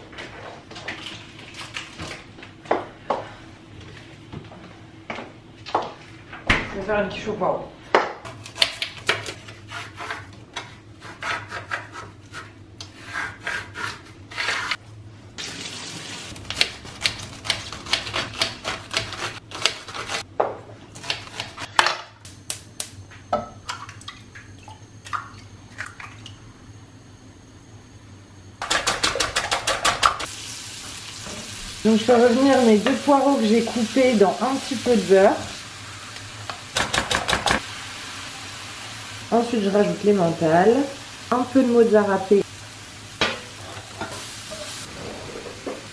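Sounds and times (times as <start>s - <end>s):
water running at sink: 15.4s - 16.3s
pan sizzling: 15.4s - 16.4s, 30.1s - 45.9s.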